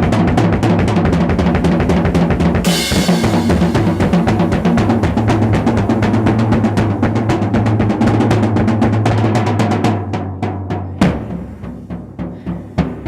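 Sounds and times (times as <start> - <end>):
ringing bass drum: 0.0 - 9.3
rapid snare and tom strokes: 0.0 - 13.0.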